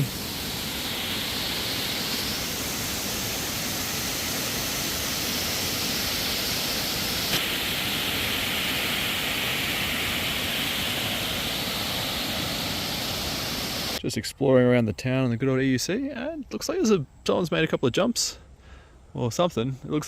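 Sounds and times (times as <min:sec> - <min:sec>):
waterfall rushing: 0:00.0 - 0:14.0.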